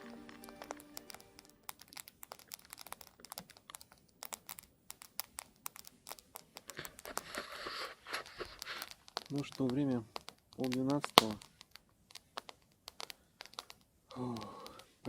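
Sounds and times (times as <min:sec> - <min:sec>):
campfire crackling: 0:00.0 - 0:15.0
soft rustling hiss: 0:00.0 - 0:15.0.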